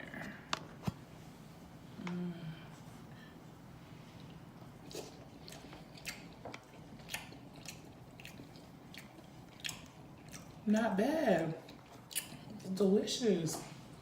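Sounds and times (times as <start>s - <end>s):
mouth chewing with wet smacks: 4.8s - 10.7s, 11.6s - 12.7s.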